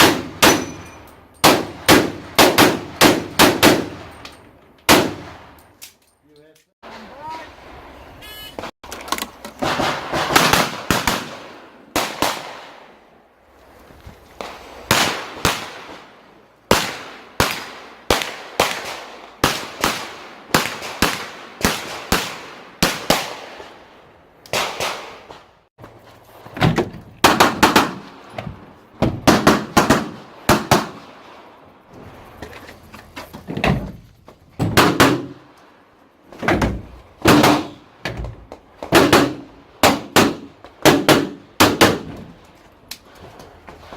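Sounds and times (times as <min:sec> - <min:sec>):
pistol shots: 0:00.0 - 0:00.8, 0:37.2 - 0:37.8, 0:38.9 - 0:42.1.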